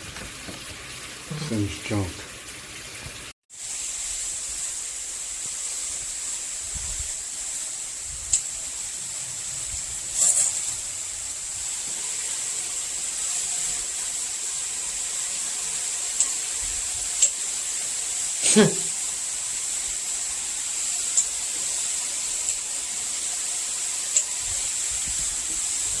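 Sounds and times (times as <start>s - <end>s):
water spraying from shower head: 0.0s - 26.0s.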